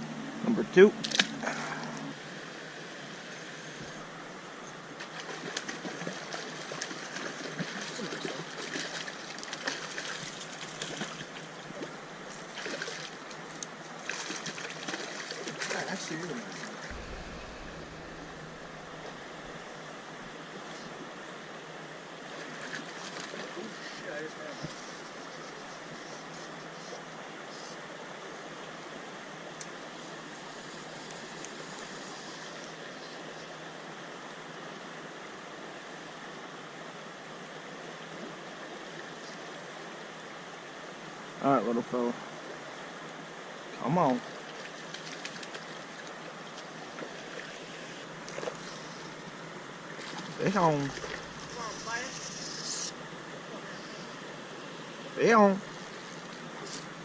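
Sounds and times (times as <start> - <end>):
stream water running: 0.0 - 57.0
small splashes in water: 5.1 - 13.3, 49.9 - 51.6.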